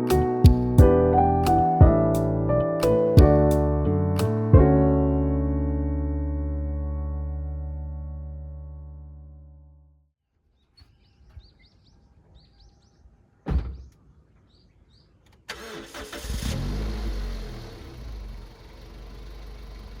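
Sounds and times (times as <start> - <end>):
birds chirping: 10.4 - 15.5
loud thump: 13.4 - 14.0
car engine starting and idling: 15.3 - 20.0.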